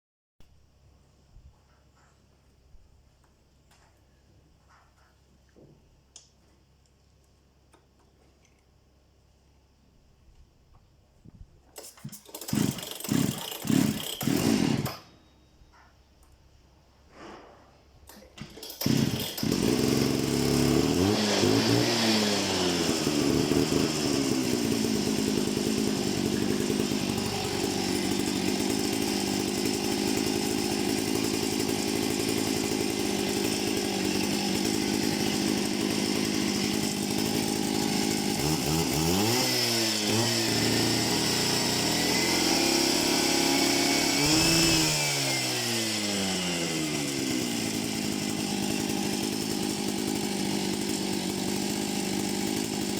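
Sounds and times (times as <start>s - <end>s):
cut-off saw engine running: 12.2s - 15.0s, 18.6s - 52.9s.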